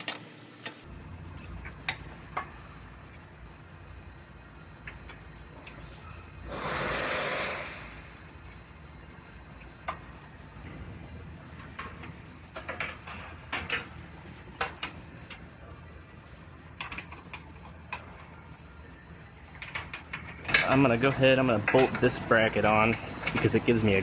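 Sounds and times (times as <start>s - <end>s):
steady low hum: 0.3s - 24.0s
metal parts clicking and knocking: 11.6s - 15.5s, 16.7s - 18.2s, 19.5s - 23.9s.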